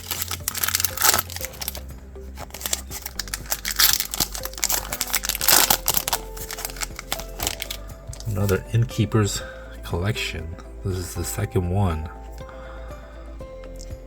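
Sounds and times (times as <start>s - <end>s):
wrapper crinkling and tearing: 0.0s - 8.6s
background music: 0.0s - 14.0s.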